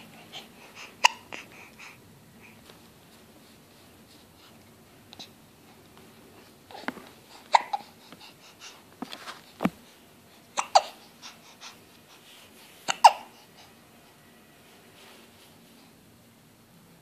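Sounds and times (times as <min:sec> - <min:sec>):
baby hiccuping: 0:01.0 - 0:01.4, 0:07.5 - 0:07.9, 0:10.6 - 0:11.0, 0:12.9 - 0:13.3.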